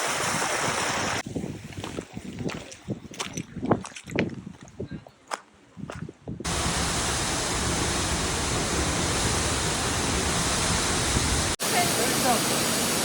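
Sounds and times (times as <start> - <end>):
waterfall rushing: 6.5 - 13.0.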